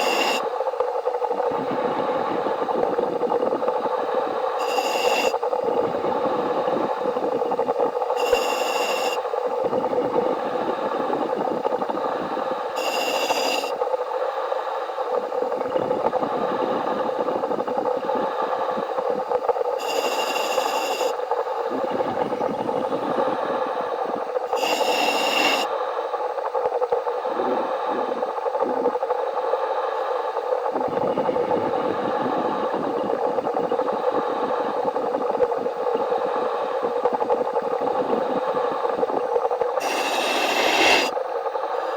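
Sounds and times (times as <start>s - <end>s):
short bursts of hiss: 4.6s - 5.3s, 8.2s - 9.2s, 19.8s - 21.1s, 24.5s - 25.7s, 39.8s - 41.1s
underwater welding arc crackling: 18.7s - 22.0s.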